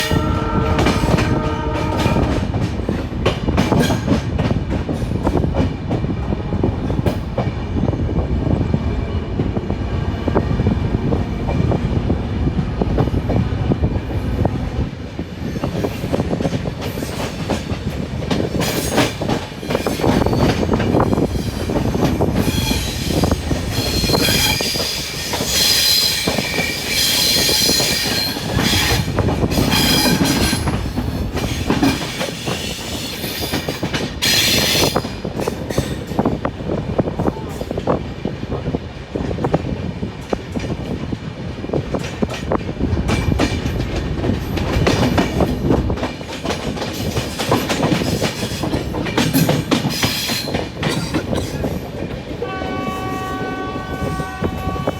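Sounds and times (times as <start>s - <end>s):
horn-like tone: 0.0s - 2.4s, 52.4s - 54.9s
train wheels clattering over rail joints: 0.0s - 7.6s, 15.3s - 52.5s
train wheels squealing: 18.6s - 30.8s, 31.4s - 36.0s, 49.8s - 51.8s.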